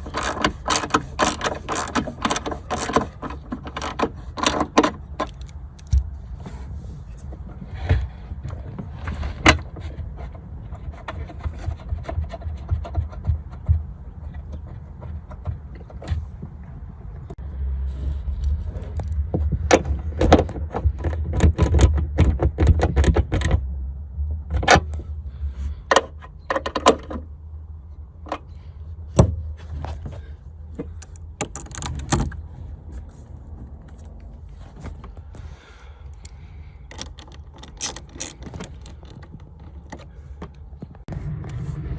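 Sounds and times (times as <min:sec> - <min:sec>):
low rumble: 0:41.0 - 0:41.9.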